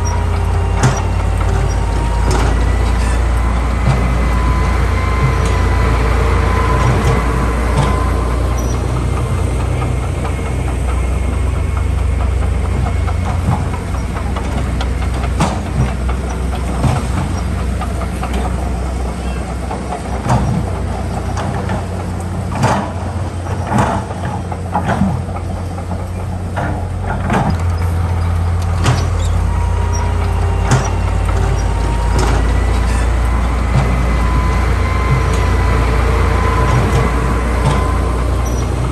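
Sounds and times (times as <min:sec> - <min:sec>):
diesel machinery droning: 0:00.0 - 0:38.9
metallic clanks and knocks: 0:00.0 - 0:38.9.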